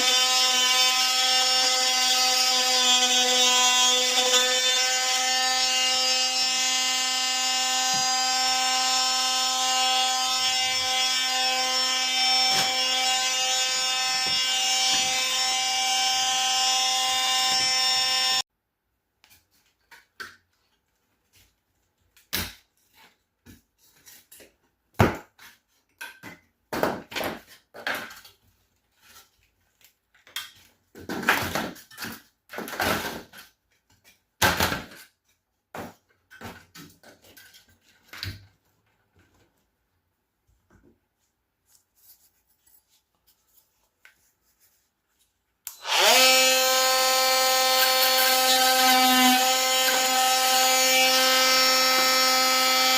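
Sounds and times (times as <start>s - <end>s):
power tool motor running: 45.7s - 52.9s.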